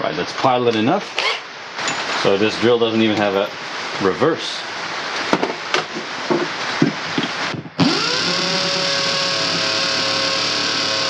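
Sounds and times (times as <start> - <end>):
electric drill spinning: 7.8 - 11.0.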